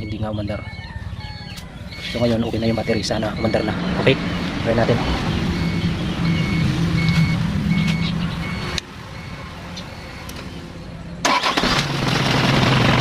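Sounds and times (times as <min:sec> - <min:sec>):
high warning beep: 0:00.0 - 0:10.3
diesel engine cranking and idling: 0:00.0 - 0:13.0.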